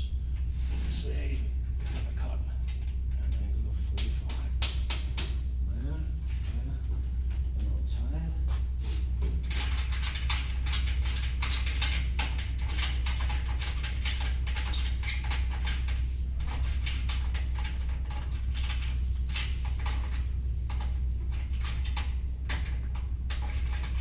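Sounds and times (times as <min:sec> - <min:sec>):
low hum: 0:00.0 - 0:24.0
metal parts clicking and rattling: 0:09.4 - 0:24.0.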